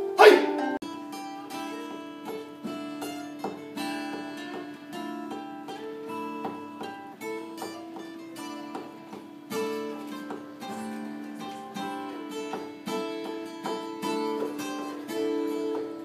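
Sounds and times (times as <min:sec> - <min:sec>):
plucked acoustic guitar: 0:00.0 - 0:16.0.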